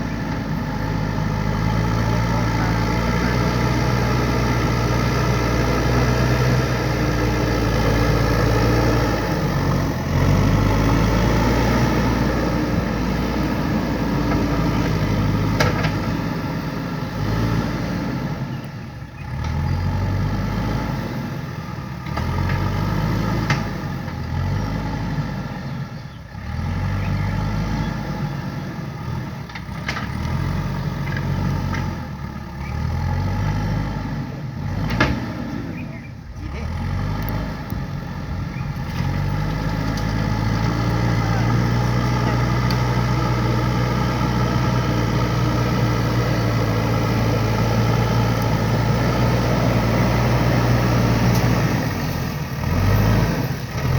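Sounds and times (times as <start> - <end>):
diesel engine running under load: 0.0 - 53.9.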